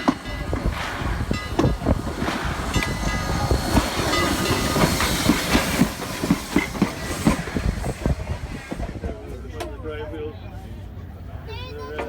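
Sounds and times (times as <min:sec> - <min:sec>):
train wheels clattering on track: 0:00.0 - 0:10.2
steam train rumble and hiss: 0:00.0 - 0:11.9.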